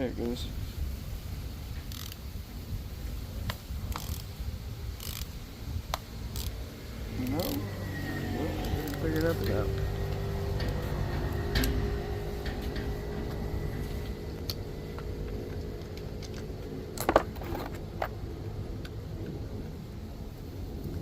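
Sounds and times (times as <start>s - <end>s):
hand tools clicking on metal: 1.9s - 2.2s, 3.9s - 4.3s, 5.0s - 18.2s
low vehicle rumble: 2.7s - 21.0s
faint hum: 4.0s - 21.0s.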